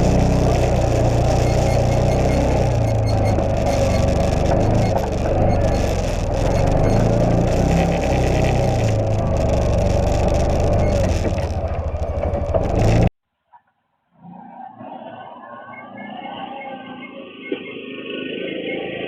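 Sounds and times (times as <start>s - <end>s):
utility vehicle engine running: 0.0s - 13.1s.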